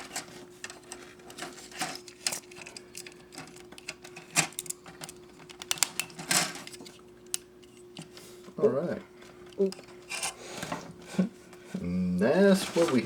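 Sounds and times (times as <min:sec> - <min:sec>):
plastic parts clicking and tapping: 0:00.0 - 0:08.1.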